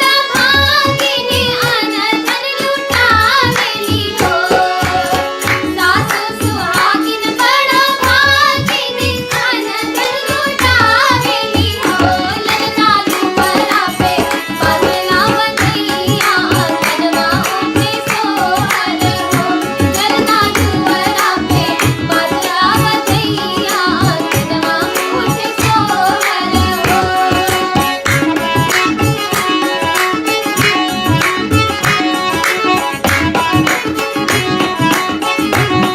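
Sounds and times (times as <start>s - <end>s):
children singing devotional song: 0.0s - 28.0s
tabla rhythm: 0.0s - 35.9s.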